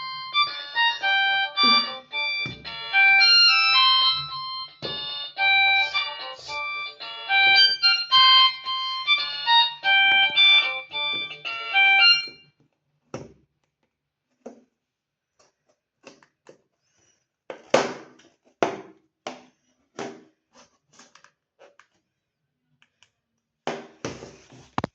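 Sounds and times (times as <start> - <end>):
phone ringtone melody: 0.0 - 12.4.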